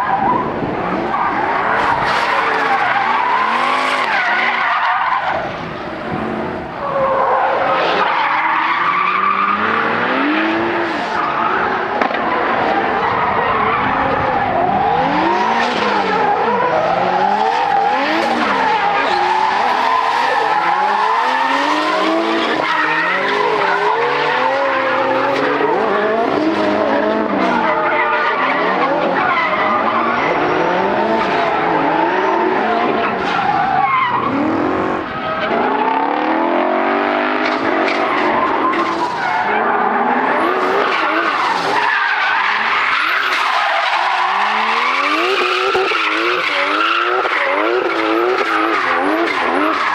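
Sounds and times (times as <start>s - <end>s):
car engines revving: 0.0s - 49.9s
tyres screeching: 28.2s - 35.6s.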